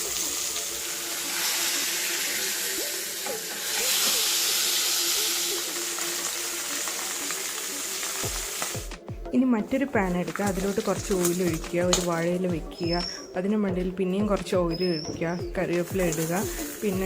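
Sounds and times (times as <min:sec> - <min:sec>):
fish sizzling in oil: 0:00.0 - 0:09.0, 0:10.3 - 0:13.3, 0:14.7 - 0:17.0.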